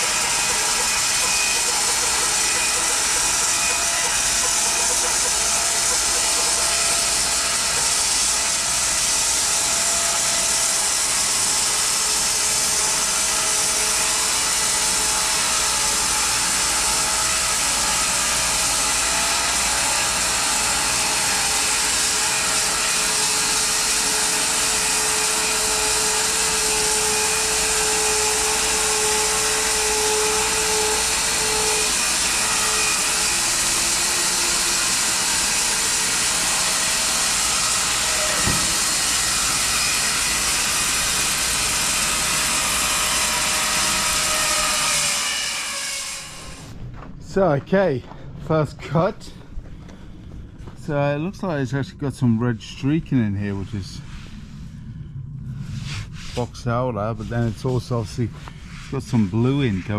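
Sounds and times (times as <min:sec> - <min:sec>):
bandsaw blade cutting log: 0:00.0 - 0:46.7, 0:57.3 - 0:59.9.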